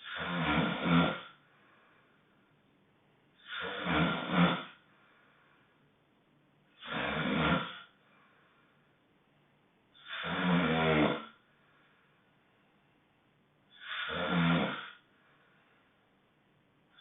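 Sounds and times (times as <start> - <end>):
honking snoring: 0.0 - 1.4, 3.4 - 4.8, 6.8 - 7.9, 10.0 - 11.4, 13.8 - 15.0
quiet breathing: 0.0 - 2.7, 3.3 - 6.0, 7.8 - 9.1, 11.3 - 13.0, 13.7 - 16.2.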